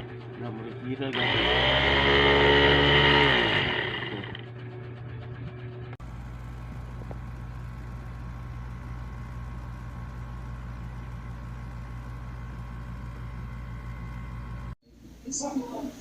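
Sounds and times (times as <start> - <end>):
food chopper motor humming: 1.1 - 4.5, 6.0 - 14.8.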